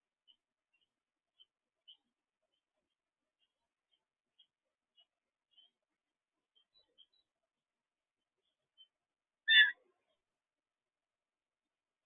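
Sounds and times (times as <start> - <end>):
faint high chirps: 0.1 - 7.7, 8.4 - 10.3.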